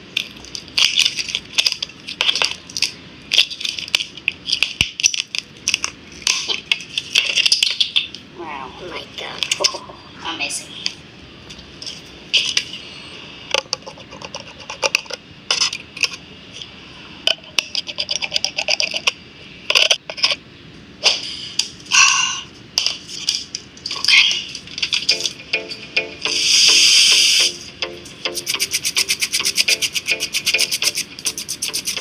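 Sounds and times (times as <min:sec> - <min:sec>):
tools scraping on phone parts: 0:28.4 - 0:32.0.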